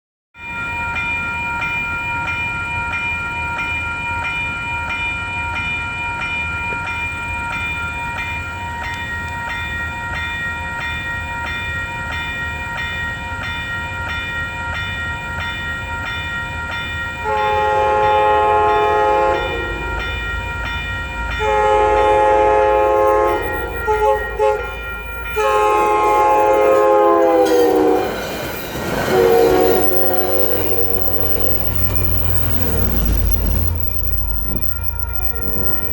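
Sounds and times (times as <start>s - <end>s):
train bell ringing: 0.4s - 35.9s
train horn blasts: 17.2s - 20.1s, 21.4s - 28.3s, 28.9s - 32.0s.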